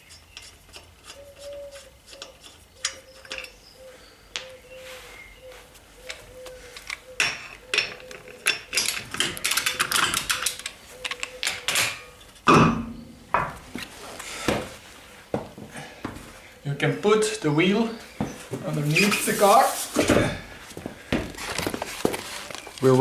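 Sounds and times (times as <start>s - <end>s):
wheel bolts clicking and rattling: 0.1s - 3.6s, 6.8s - 12.5s.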